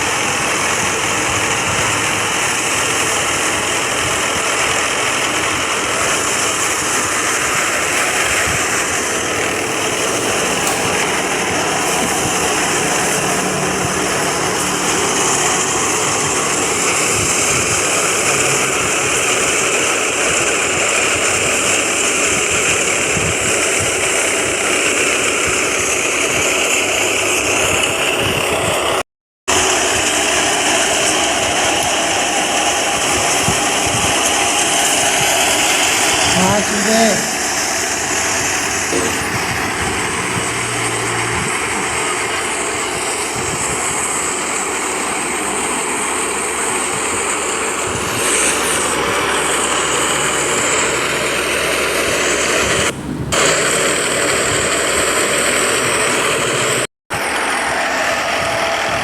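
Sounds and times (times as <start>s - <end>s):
thresher whirring: 0.0s - 28.1s, 29.6s - 56.8s
tractor diesel engine running: 0.0s - 59.0s.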